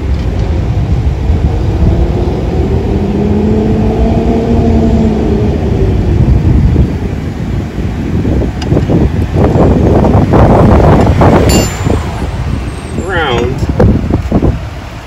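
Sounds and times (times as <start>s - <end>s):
wind buffeting microphone: 0.0s - 15.0s
vehicle passing: 0.7s - 7.1s, 9.5s - 13.2s.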